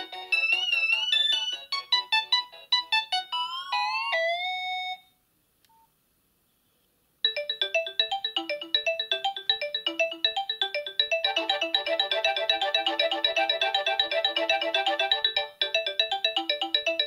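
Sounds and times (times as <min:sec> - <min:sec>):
phone ringtone melody: 0:07.3 - 0:17.0.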